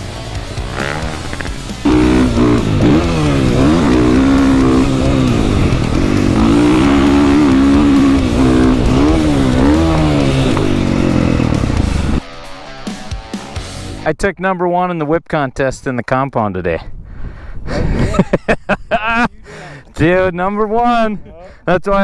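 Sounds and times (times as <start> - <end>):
dirt bike engine revving: 0.0 - 14.1.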